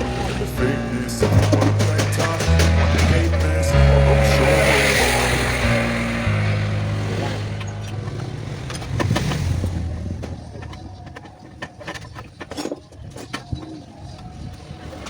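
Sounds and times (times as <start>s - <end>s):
low hum: 0.0s - 10.6s.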